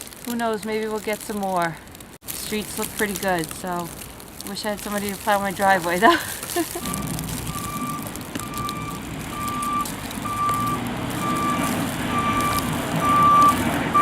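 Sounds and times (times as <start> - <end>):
reversing alarm beeping: 6.8 - 14.0
truck engine running: 6.8 - 14.0.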